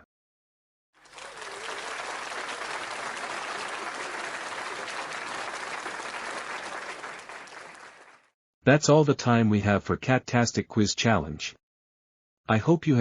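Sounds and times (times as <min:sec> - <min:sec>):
audience applause: 0:01.0 - 0:08.3.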